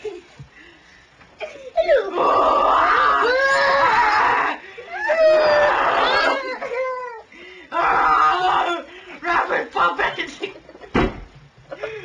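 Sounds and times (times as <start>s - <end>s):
person screaming: 1.9s - 8.9s.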